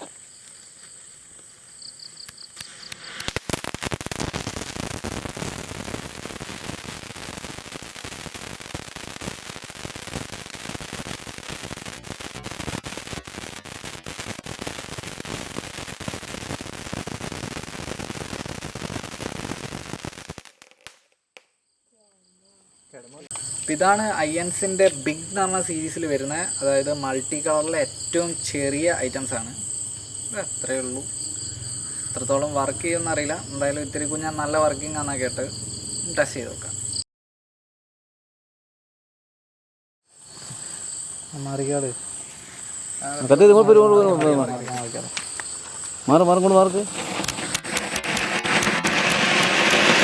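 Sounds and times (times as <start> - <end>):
firework fountain crackling: 0.0 - 21.1, 23.3 - 37.0, 40.2 - 50.0.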